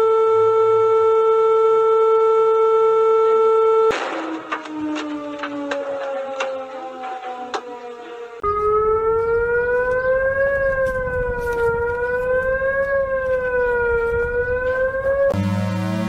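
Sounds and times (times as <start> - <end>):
siren wailing: 0.0 - 16.0
synthesizer music: 15.3 - 16.0.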